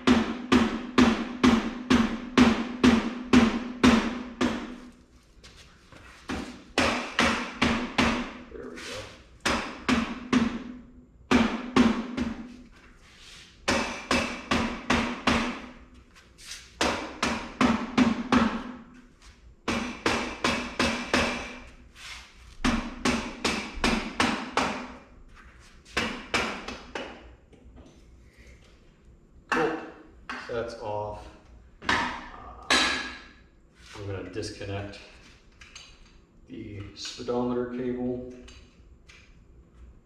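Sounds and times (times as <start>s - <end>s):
hammer striking metal: 0.0s - 4.7s, 13.7s - 15.7s, 19.7s - 21.6s, 31.9s - 33.3s.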